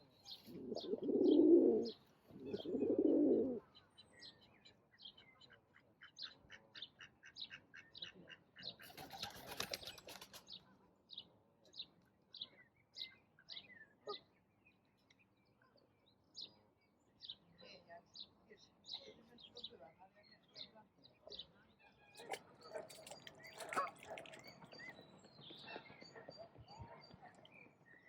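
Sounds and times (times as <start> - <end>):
songbirds chirping: 0.0 - 28.0
bird wings flapping: 8.9 - 10.4.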